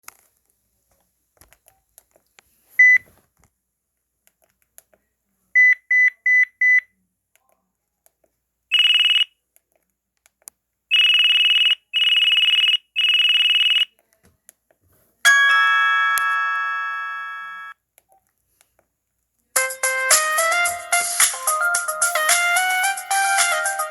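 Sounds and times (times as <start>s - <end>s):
cell phone beeps: 2.8s - 3.0s, 15.3s - 17.7s
bright chime: 15.3s - 17.7s.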